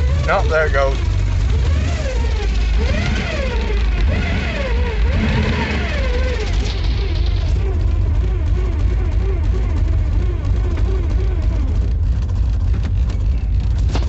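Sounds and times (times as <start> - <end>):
car engine low rumble: 0.0 - 14.0.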